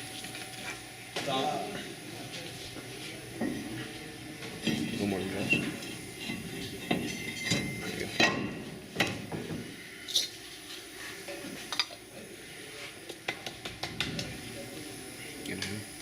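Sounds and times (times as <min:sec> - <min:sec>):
metal tools clinking: 0:06.2 - 0:08.4, 0:10.1 - 0:10.4.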